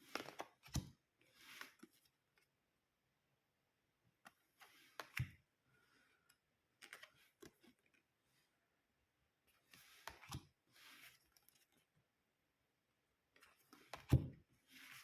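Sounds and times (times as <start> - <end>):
cards being handled: 0.0 - 2.0, 6.8 - 8.0.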